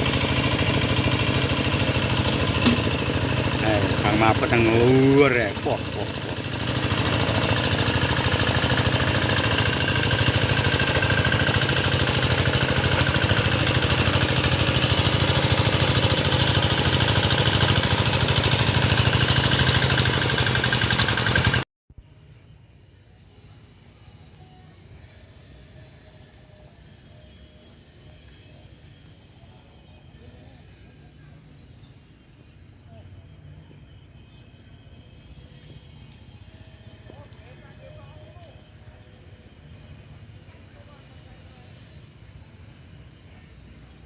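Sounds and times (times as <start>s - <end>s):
tractor engine running: 0.0s - 21.6s
insect chirps: 22.0s - 44.0s.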